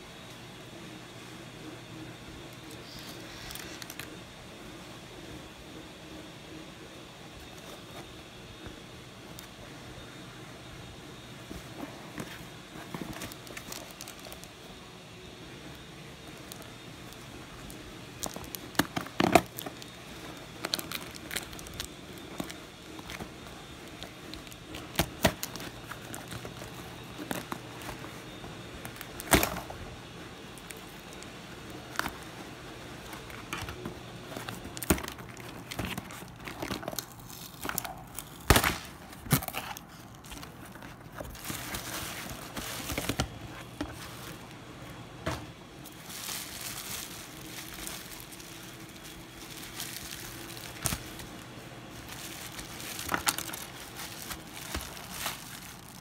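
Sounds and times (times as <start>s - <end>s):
plastic crinkling: 11.5s - 14.8s, 15.7s - 44.7s, 45.4s - 56.0s.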